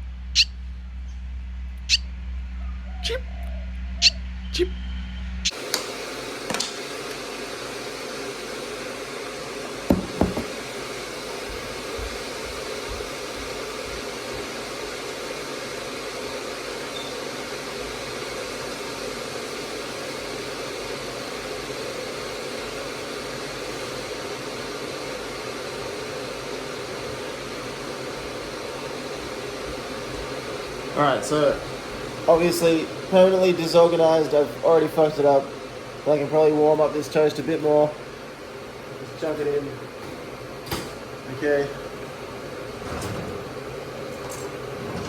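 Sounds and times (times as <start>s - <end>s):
sharp knocks: 9.9s - 10.6s.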